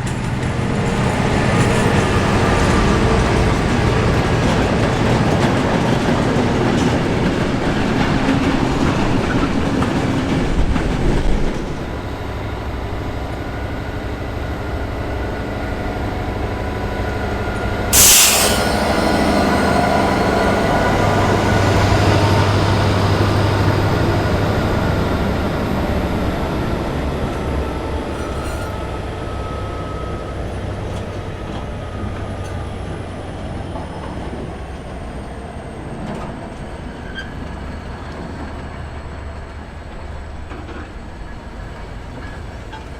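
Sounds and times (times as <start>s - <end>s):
sharp hiss burst: 18.0s - 20.8s.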